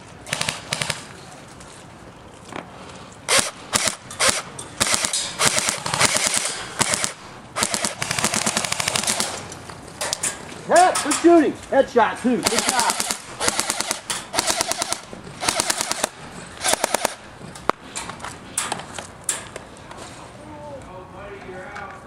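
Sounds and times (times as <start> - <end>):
airsoft guns firing bursts: 0.3 - 1.1, 3.3 - 9.5, 12.4 - 17.3.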